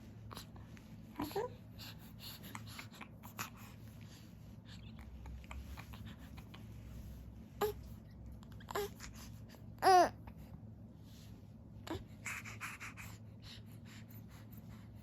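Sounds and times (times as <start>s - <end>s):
infant cooing and babbling: 1.1s - 3.6s, 7.6s - 7.9s, 8.5s - 10.3s.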